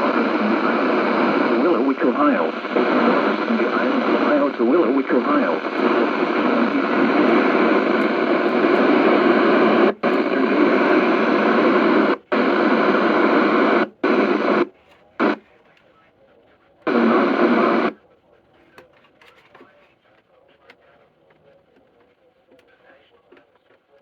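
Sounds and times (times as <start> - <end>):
radio static hiss: 0.0 - 15.4, 16.8 - 18.0.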